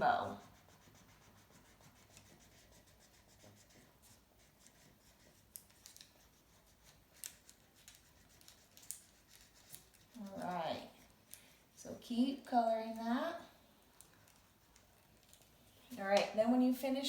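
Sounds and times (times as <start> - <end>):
marker scratching on paper: 0.0 - 11.1.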